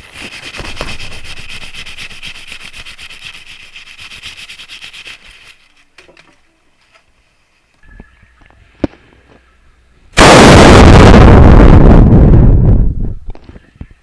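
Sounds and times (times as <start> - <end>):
fast scraping strokes: 0.0 - 6.0.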